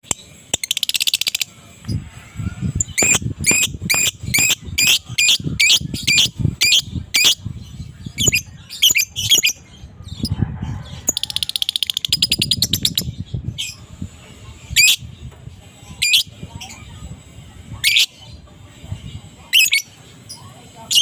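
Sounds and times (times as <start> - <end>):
lovebird rattling chatter: 2.7 - 7.4.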